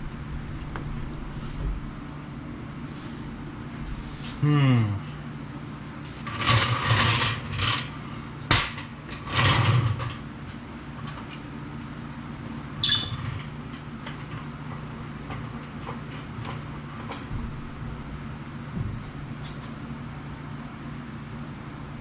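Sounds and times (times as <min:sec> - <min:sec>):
steady low hum: 0:00.0 - 0:22.0
metal scraping and rattling: 0:06.0 - 0:10.2.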